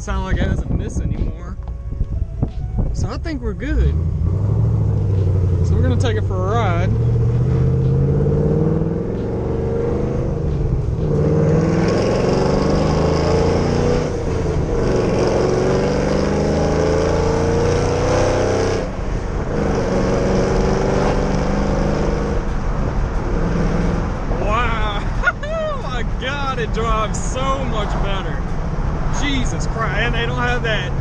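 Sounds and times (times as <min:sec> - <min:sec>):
car engine accelerating through gears: 0:03.8 - 0:25.2.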